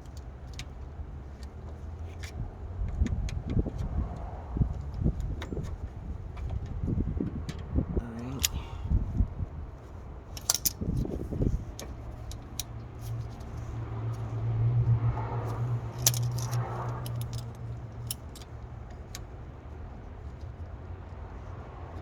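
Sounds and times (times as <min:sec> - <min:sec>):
metal tools clinking on brakes: 0:08.0 - 0:08.8, 0:10.3 - 0:13.7, 0:15.5 - 0:19.2.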